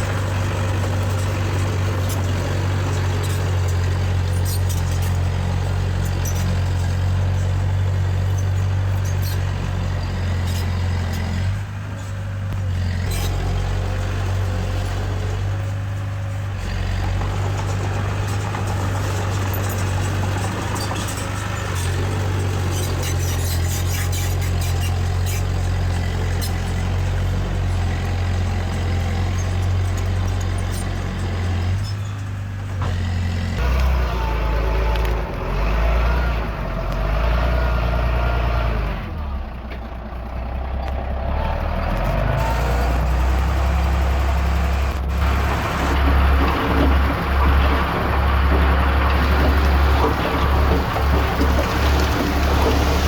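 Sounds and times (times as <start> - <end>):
diesel engine humming: 0.0 - 53.0.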